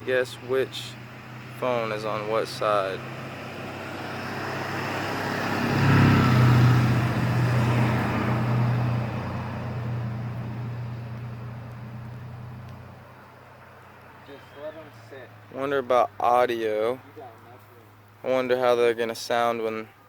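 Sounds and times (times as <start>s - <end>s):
car passing by: 0.0s - 15.7s.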